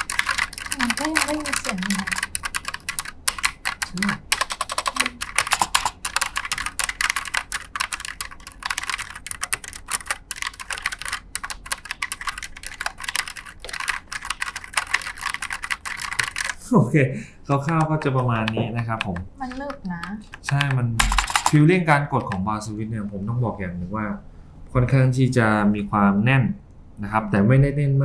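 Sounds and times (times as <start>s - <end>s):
mechanical keyboard typing: 0.0s - 16.6s, 17.5s - 22.5s.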